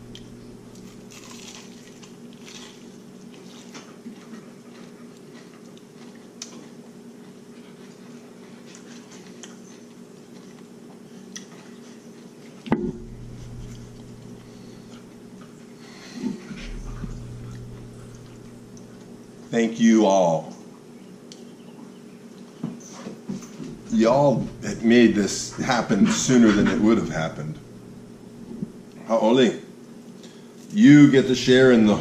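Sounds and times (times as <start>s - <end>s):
steady low hum: 0.0s - 8.5s, 12.5s - 21.4s, 23.2s - 32.0s
person chewing food: 0.1s - 12.6s
loud thump: 12.7s - 14.4s, 16.5s - 19.2s.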